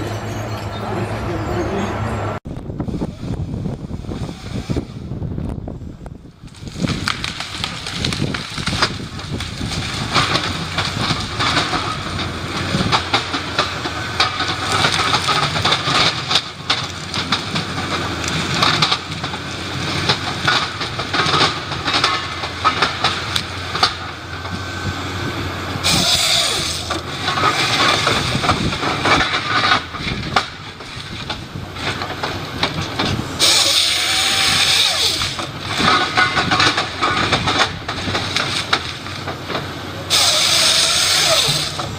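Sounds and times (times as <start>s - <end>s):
heavy wood-processing machinery: 0.0s - 41.9s
knocks and cracks: 6.4s - 24.0s.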